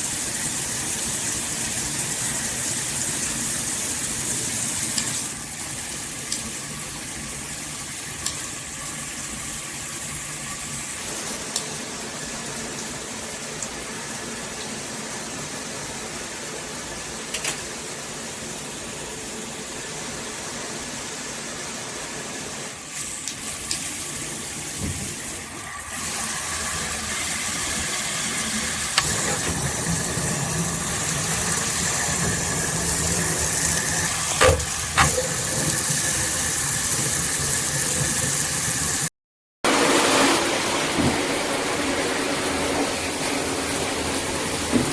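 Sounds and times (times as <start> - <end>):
shower head spraying water: 22.9 - 39.1.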